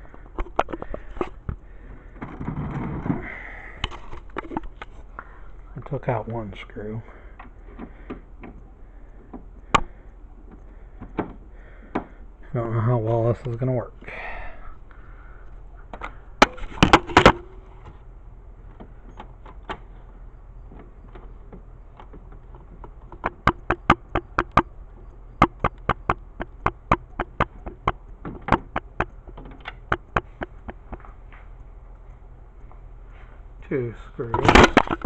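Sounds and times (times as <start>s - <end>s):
loud knocks: 23.2s - 24.7s.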